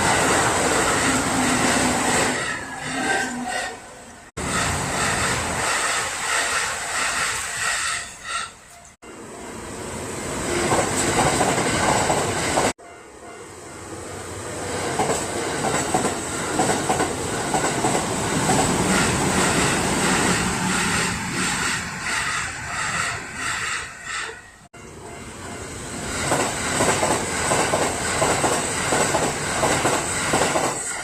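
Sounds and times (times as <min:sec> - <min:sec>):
train wheels clacking over rail joints: 0:14.9 - 0:24.3, 0:26.1 - 0:31.0.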